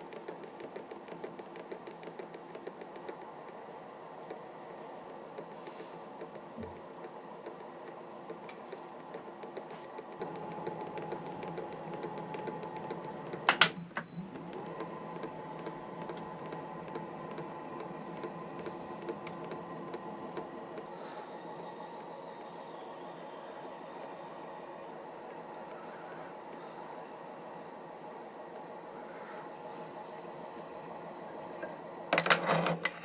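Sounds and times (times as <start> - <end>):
die cutting thread mechanical noise: 13.4 - 14.2, 32.1 - 33.0.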